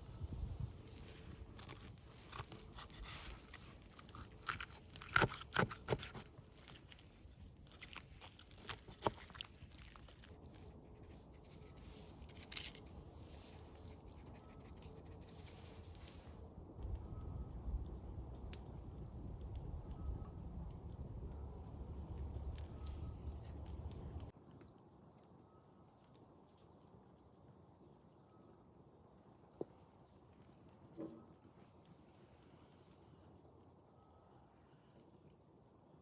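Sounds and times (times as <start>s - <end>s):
person crunching and chewing: 1.6s - 6.8s, 7.6s - 10.5s.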